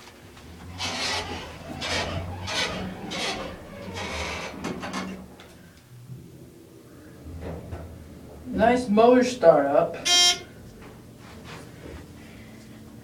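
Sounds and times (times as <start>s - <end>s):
elevator motor hum: 0.3s - 9.4s
rasping scraping strokes: 0.6s - 4.6s.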